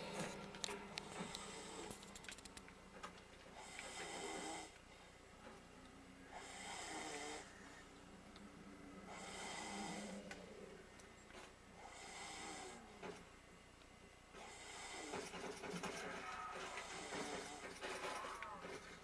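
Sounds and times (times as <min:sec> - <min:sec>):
man snoring: 0:03.6 - 0:04.7, 0:06.3 - 0:07.5, 0:09.1 - 0:10.3, 0:11.8 - 0:12.9.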